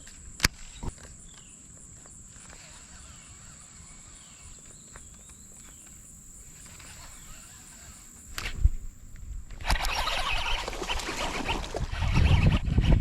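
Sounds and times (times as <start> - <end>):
insect drone: 0.0 - 13.0
wind rumble on microphone: 8.3 - 13.0.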